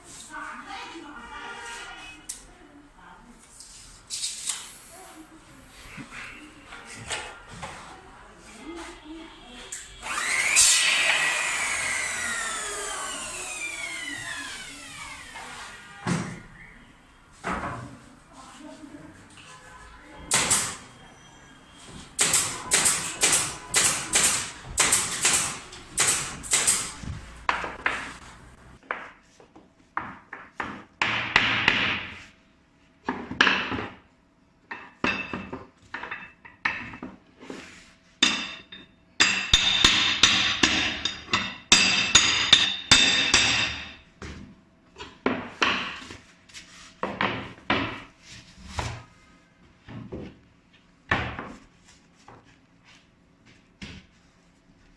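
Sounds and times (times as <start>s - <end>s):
hammer strikes on wood: 20.3s - 20.8s, 22.2s - 28.1s, 30.0s - 32.2s, 38.2s - 43.9s.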